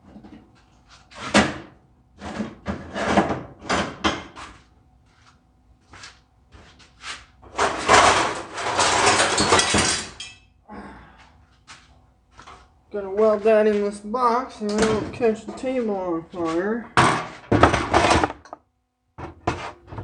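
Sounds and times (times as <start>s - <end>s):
metal parts clattering: 7.6s - 10.4s.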